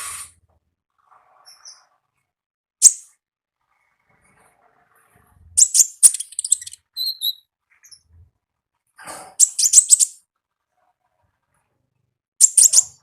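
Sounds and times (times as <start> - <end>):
thin whistled bird notes: 5.6 - 8.0, 9.4 - 10.2, 12.4 - 13.0
songbird chirping in rattling bursts: 5.6 - 8.1, 9.4 - 10.2, 12.4 - 13.0.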